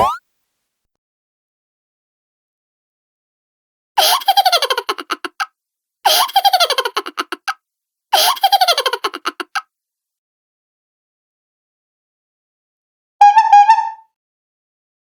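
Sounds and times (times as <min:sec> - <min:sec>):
cartoon laugh sound effect: 0:00.0 - 0:00.2, 0:04.0 - 0:05.5, 0:06.1 - 0:07.6, 0:08.2 - 0:09.6.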